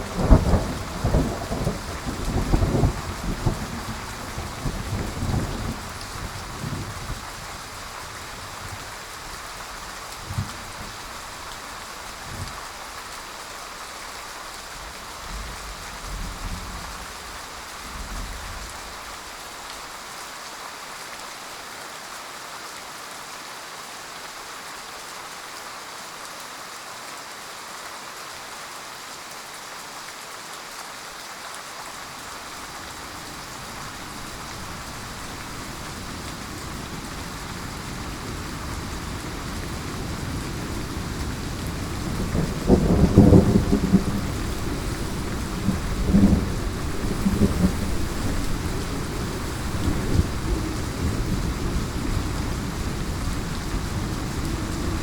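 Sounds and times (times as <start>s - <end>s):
thunder rumbling: 0.0s - 7.1s, 32.4s - 55.0s
heavy rain pattering: 0.0s - 20.1s, 31.7s - 55.0s.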